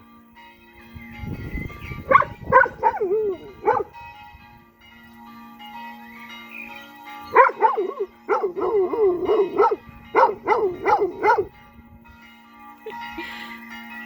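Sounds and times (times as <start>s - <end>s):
church bells ringing: 0.0s - 14.0s
dog howling: 2.1s - 3.9s, 7.3s - 11.5s.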